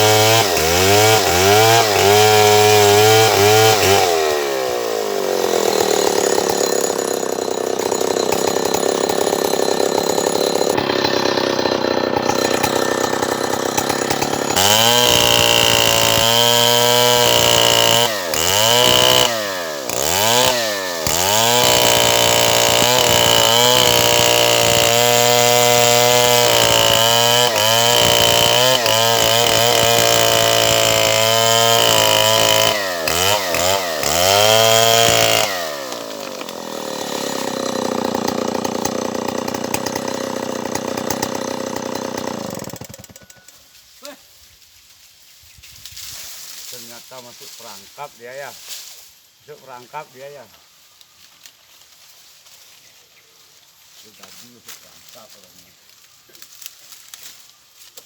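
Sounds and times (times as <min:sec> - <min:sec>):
chainsaw running: 0:00.0 - 0:43.6.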